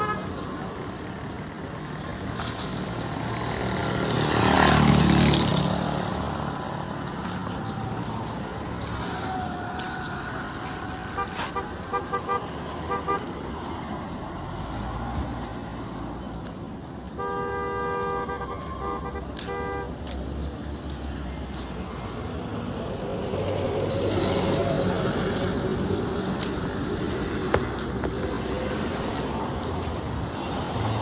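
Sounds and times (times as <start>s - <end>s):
passing vehicles: 0.0s - 31.0s
car horns tooting: 11.1s - 13.4s, 17.2s - 20.0s.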